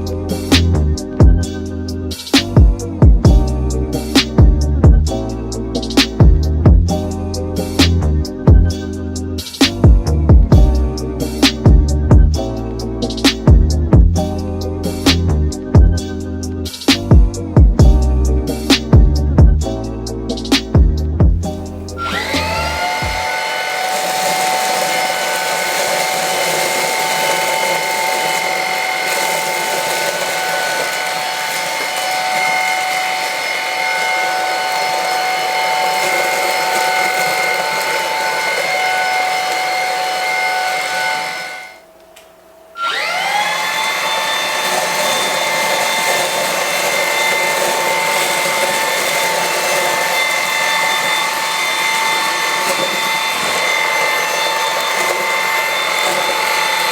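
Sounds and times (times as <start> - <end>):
vacuum motor whining: 21.4 - 42.2, 42.8 - 56.9.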